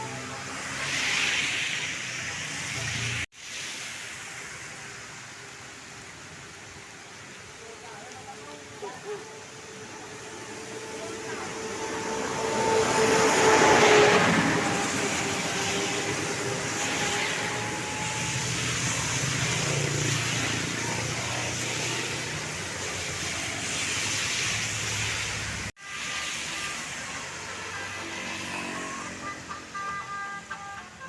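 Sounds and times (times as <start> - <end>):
bus passing close by: 9.6 - 31.0.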